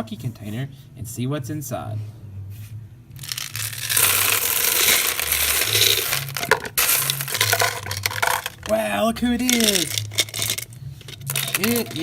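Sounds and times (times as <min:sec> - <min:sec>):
plastic packaging crinkling: 0:03.2 - 0:08.8, 0:09.4 - 0:12.0.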